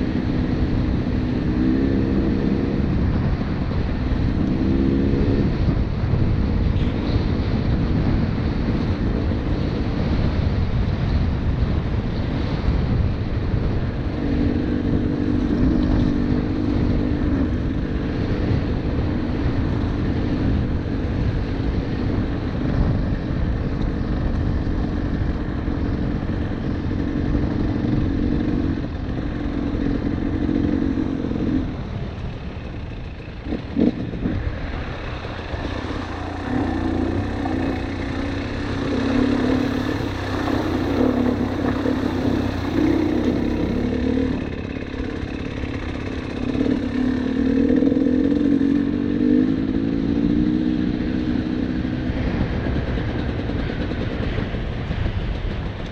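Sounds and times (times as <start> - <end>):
heavy low rumble: 0.0 - 49.0
dirt bike engine revving: 33.4 - 51.8.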